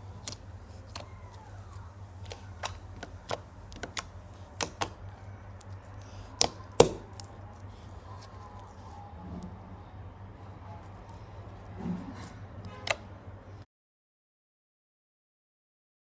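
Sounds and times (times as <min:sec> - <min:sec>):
low steady hum: 0:00.0 - 0:13.6
slime clicking and popping: 0:02.2 - 0:05.0, 0:05.6 - 0:07.3.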